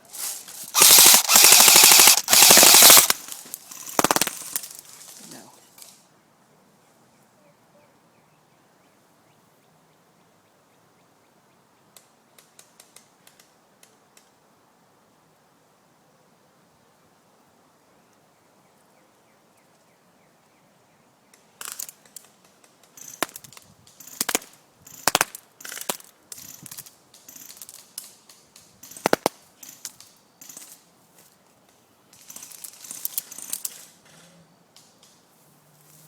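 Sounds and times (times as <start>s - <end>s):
airsoft gun shots: 0.8s - 4.6s, 24.1s - 26.0s, 29.0s - 29.4s.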